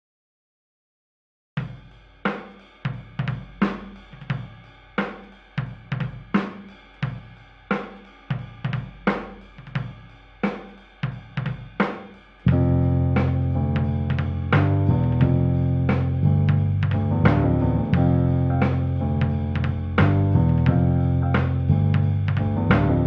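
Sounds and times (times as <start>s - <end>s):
drum kit beat: 1.6s - 23.0s
sustained bass and guitar notes: 12.5s - 23.0s.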